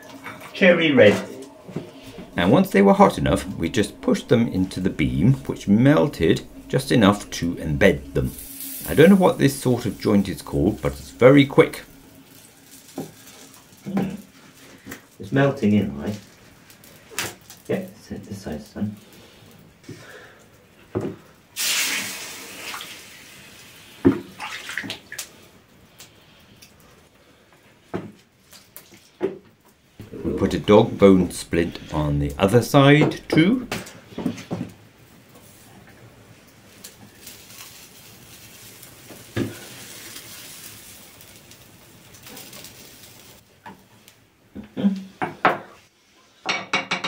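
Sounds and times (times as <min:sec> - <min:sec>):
hot steel sizzling hiss: 0:00.0 - 0:17.9, 0:18.7 - 0:24.4, 0:30.0 - 0:34.6, 0:35.2 - 0:43.5.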